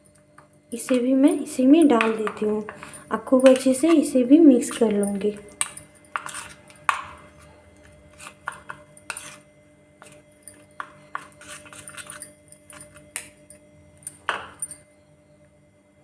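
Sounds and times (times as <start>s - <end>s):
metal spoon scraping in steel pan: 0.8s - 13.3s.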